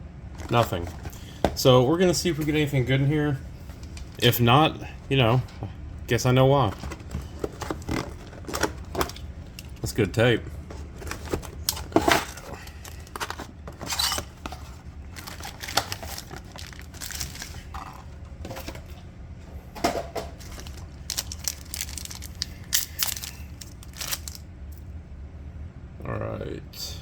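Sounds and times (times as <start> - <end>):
cardboard box rustling: 0.4 - 1.6, 6.4 - 18.9, 20.4 - 22.4
packing tape tearing off cardboard: 10.8 - 18.0, 20.4 - 24.4.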